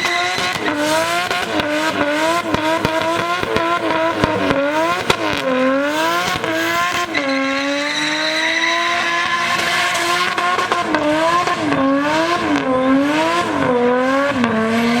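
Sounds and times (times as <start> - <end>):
tyre squeal: 0.0 - 2.4, 6.7 - 10.4
car engine at high revs: 0.0 - 15.0.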